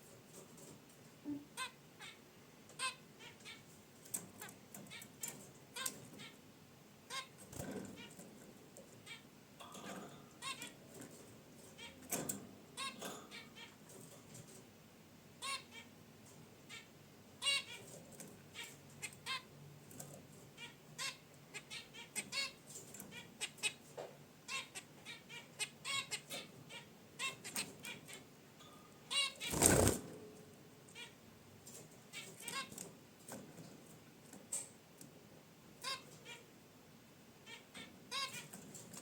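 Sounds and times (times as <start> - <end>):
finches honking calls: 2.8 - 3.7, 10.3 - 10.8, 15.4 - 15.9, 16.7 - 17.9, 20.6 - 23.8, 24.5 - 28.3, 37.4 - 38.5.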